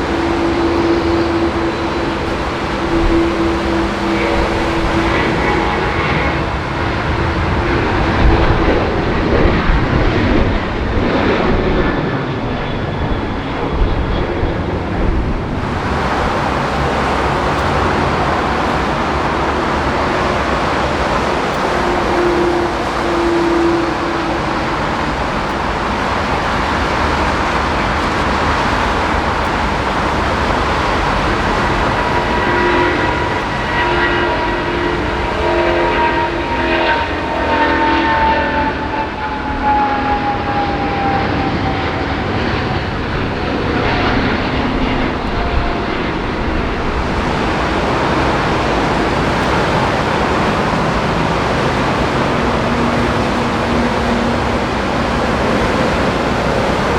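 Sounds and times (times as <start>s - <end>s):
heavy rain hiss: 0.0s - 9.9s, 15.4s - 37.4s, 46.2s - 56.9s
jet engine whine: 0.0s - 56.9s.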